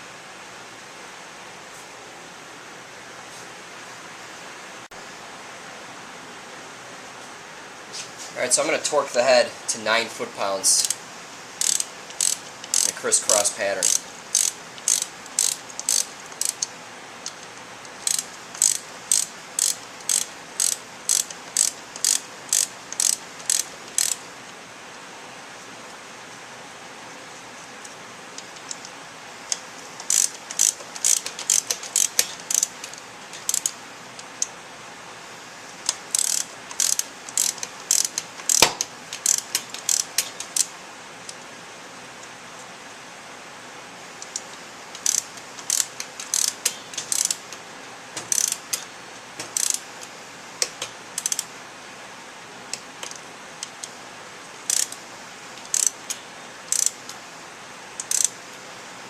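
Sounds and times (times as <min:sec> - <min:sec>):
torque wrench ratchet clicking: 0:10.8 - 0:11.0, 0:11.6 - 0:24.2, 0:29.5 - 0:33.8, 0:35.9 - 0:40.7, 0:44.2 - 0:47.4, 0:48.3 - 0:48.9, 0:49.5 - 0:49.8, 0:50.6 - 0:51.5, 0:54.7 - 0:55.0, 0:55.6 - 0:57.1, 0:58.0 - 0:58.4.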